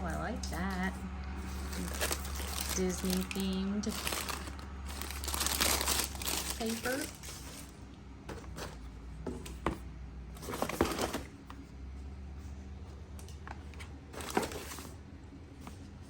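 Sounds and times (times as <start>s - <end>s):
paper wrapping crinkling: 1.4s - 7.8s, 10.4s - 11.4s, 14.1s - 15.0s.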